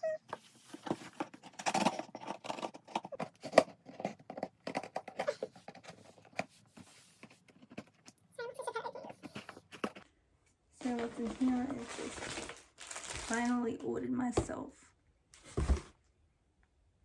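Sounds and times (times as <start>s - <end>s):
packaging rustling and crinkling: 0.3s - 8.1s, 10.8s - 13.8s.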